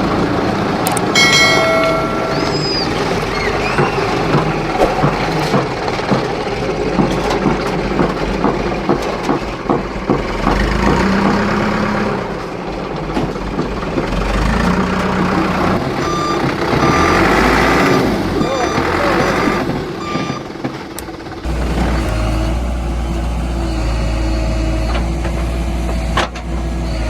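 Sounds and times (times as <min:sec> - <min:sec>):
heavy machinery engine idling: 0:00.0 - 0:27.0
knocks and clanks: 0:00.9 - 0:11.5, 0:24.8 - 0:26.6.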